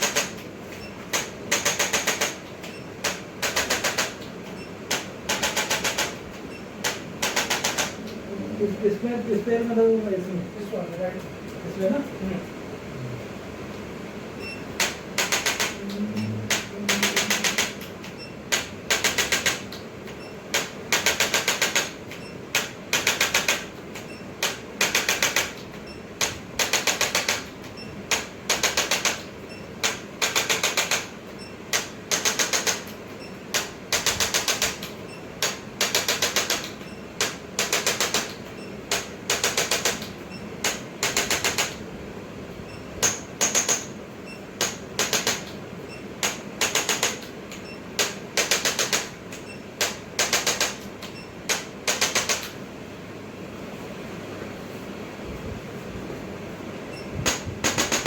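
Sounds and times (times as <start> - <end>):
rapid mechanical tapping: 0.0 - 8.2, 14.4 - 41.8, 42.6 - 52.6, 57.2 - 58.0.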